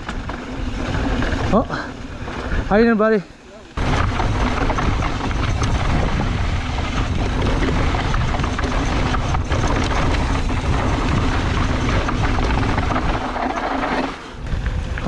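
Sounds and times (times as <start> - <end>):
bike clattering over bumps: 0.0 - 15.0
wind buffeting microphone: 3.8 - 15.0.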